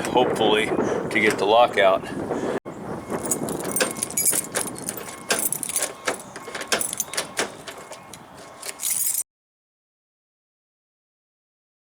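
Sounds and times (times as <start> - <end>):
keys jangling: 3.2 - 9.2
key clicking in door lock: 3.3 - 9.2.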